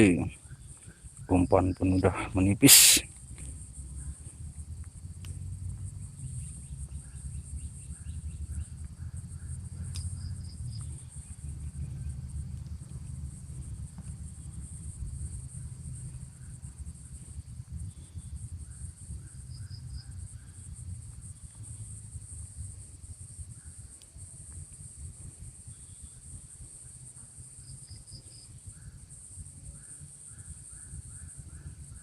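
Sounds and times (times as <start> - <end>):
insects buzzing: 0.0 - 32.0
low rumble: 3.2 - 26.7
bird chirps: 6.2 - 12.2.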